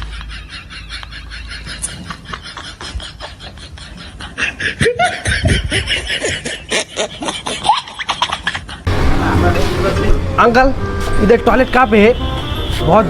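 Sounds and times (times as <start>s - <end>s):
person laughing: 0.0s - 8.9s.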